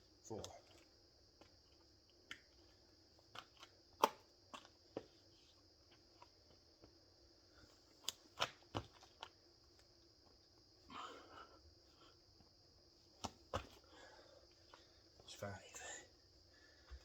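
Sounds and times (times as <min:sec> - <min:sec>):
hands and feet thumping floor: 0:13.1 - 0:13.9.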